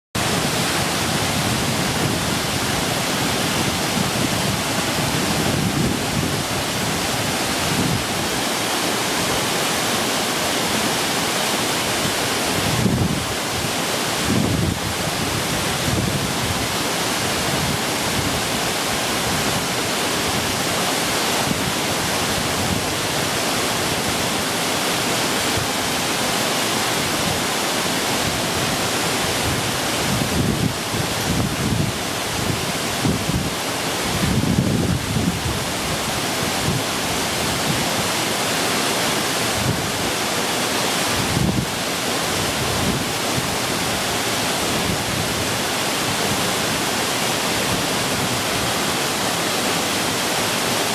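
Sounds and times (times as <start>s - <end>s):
waterfall rushing: 0.2s - 50.9s
wind buffeting microphone: 0.3s - 8.5s, 12.6s - 19.6s, 28.2s - 38.1s, 41.0s - 46.6s.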